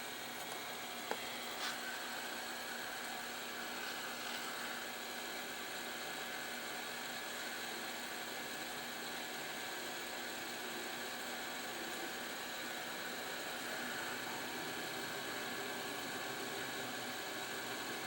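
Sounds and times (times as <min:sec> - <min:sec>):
heat gun blowing air: 0:01.1 - 0:05.2.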